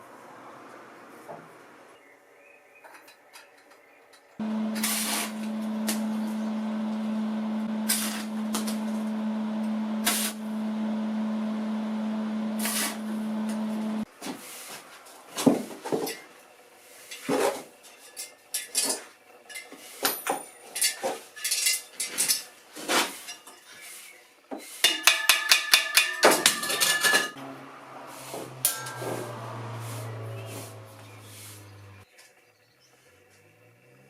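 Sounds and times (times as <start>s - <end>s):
low steady hum: 4.4s - 14.1s, 27.4s - 32.0s
ringing metallic taps: 24.9s - 27.4s, 28.5s - 32.0s.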